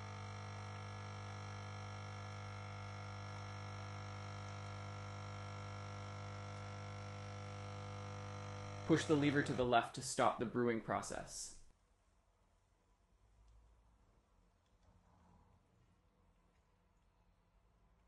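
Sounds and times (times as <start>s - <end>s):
coffee machine pump buzzing: 0.0s - 9.7s.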